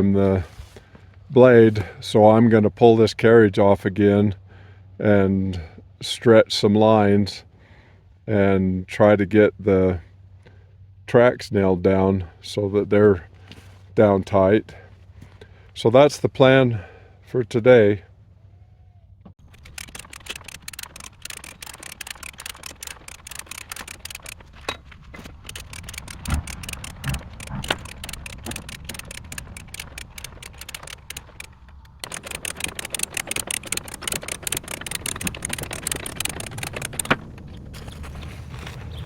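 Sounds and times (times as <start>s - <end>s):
sawmill carriage clicking and rattling: 19.4s - 38.0s.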